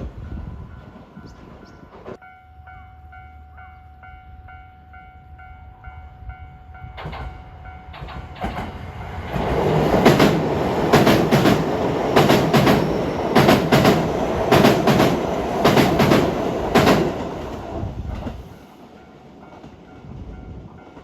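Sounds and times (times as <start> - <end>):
train rolling noise: 0.0 - 21.0
train wheels clacking over joints: 7.0 - 17.6.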